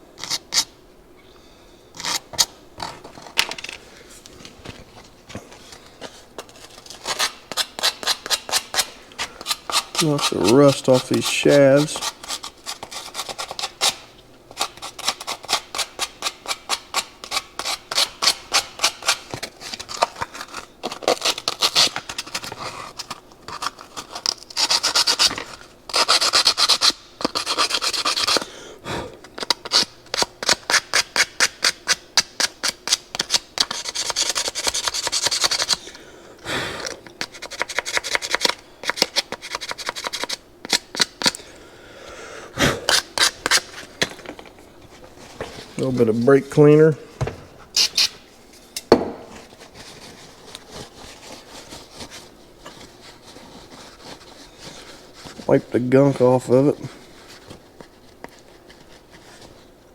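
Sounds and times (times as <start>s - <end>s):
abrasive paper rubbing on metal: 6.4s - 14.0s.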